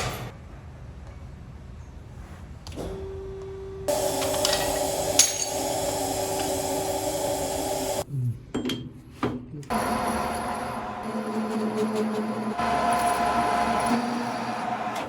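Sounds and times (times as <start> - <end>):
metal grinding machine: 3.9 - 8.0, 9.7 - 15.0.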